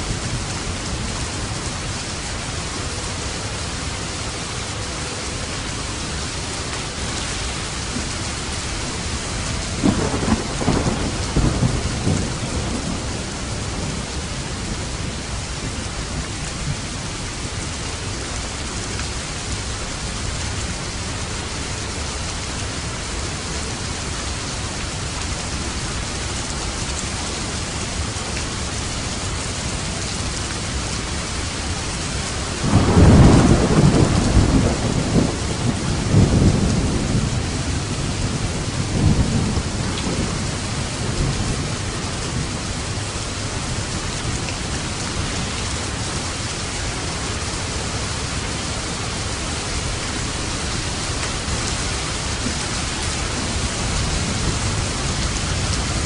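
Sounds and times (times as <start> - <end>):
steady rain falling: 0.0 - 56.0
thunder rumbling: 7.8 - 16.9, 32.2 - 46.1.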